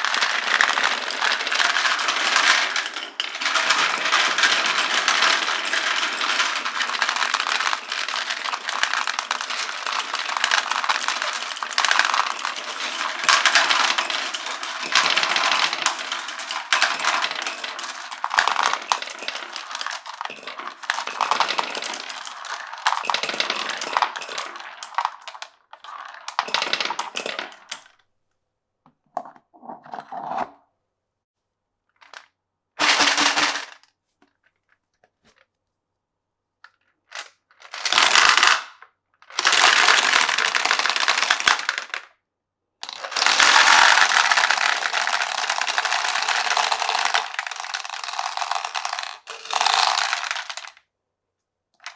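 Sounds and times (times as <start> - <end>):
glass marbles rattling down wooden run: 0.0 - 27.9, 32.8 - 33.8, 37.6 - 38.7, 39.3 - 42.0, 42.8 - 50.8.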